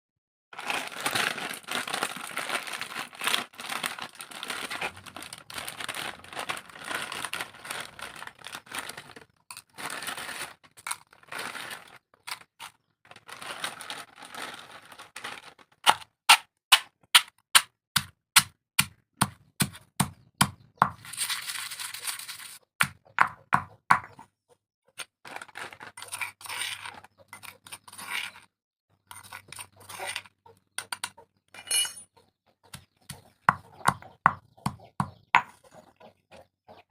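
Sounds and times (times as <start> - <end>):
crunchy snacks being chewed: 0.6 - 16.0.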